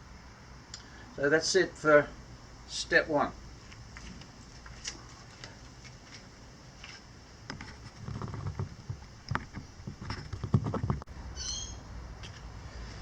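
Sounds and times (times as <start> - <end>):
irregular knocks and clicks: 6.8 - 11.1.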